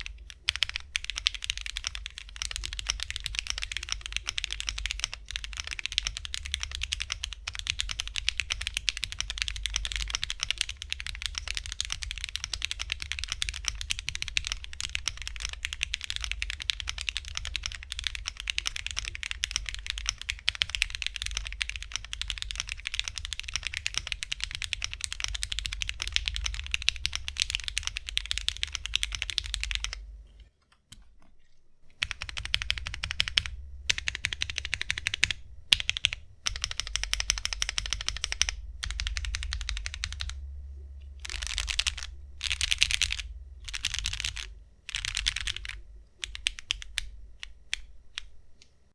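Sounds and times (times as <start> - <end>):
fast typing on mechanical keyboard: 0.0 - 30.1, 31.9 - 40.4, 41.2 - 48.4.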